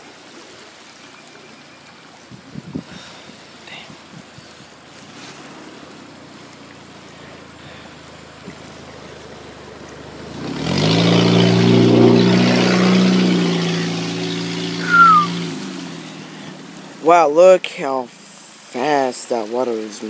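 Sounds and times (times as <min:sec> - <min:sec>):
rushing floodwater: 0:00.0 - 0:20.0
vehicle engine and tyre hiss: 0:02.9 - 0:17.0, 0:18.1 - 0:18.8
high falling chirp: 0:14.8 - 0:15.4.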